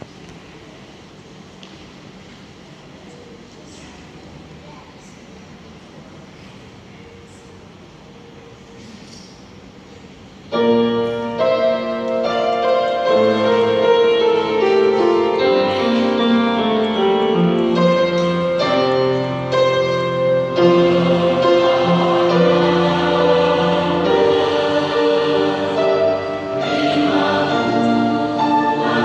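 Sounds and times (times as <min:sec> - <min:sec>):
piano playing chords: 0:10.5 - 0:29.0.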